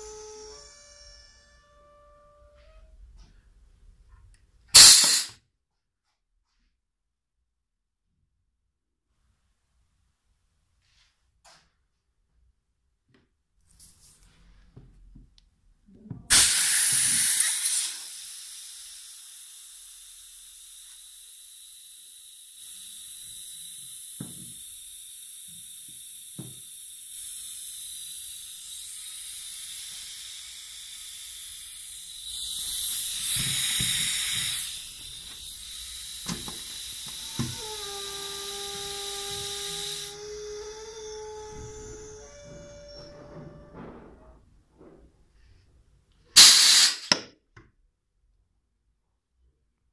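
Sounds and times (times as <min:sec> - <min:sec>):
compressed air hissing: 0:04.8 - 0:05.3, 0:16.3 - 0:43.1, 0:46.4 - 0:47.2.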